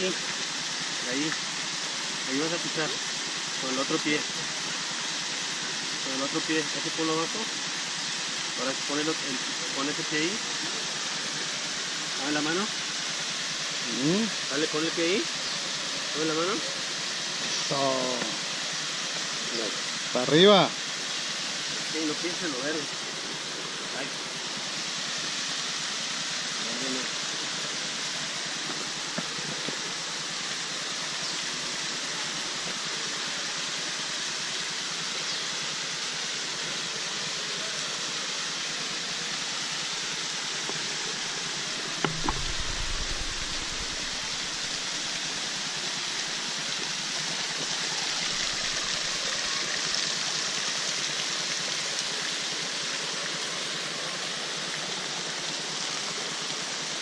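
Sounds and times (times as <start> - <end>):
waterfall rushing: 0.0 - 57.0
thump with low rumble: 42.0 - 44.2.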